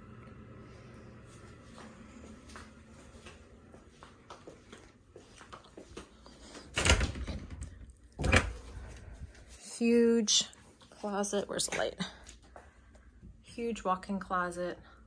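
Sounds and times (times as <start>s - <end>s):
door being opened: 6.6s - 8.9s.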